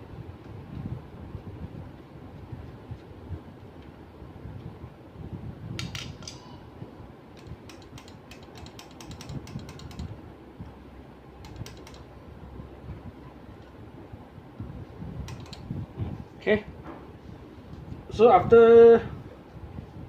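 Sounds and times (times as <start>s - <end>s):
steady low hum: 0.0s - 20.0s
screwdriver and screws clicking: 7.4s - 10.1s, 11.4s - 12.1s, 15.2s - 15.6s.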